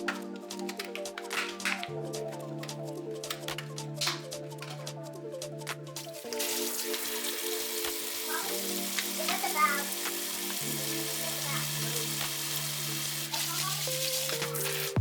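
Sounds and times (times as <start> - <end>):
background music with held chords: 0.0 - 15.0.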